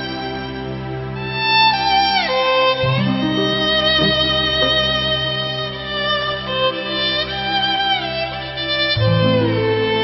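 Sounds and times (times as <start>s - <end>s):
instrumental music with sliding notes: 0.0s - 10.0s.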